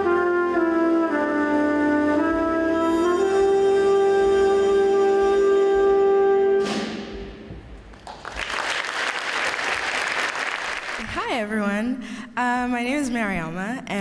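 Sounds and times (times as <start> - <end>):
brass band chord: 0.0 - 7.2
audience applauding: 8.0 - 11.2.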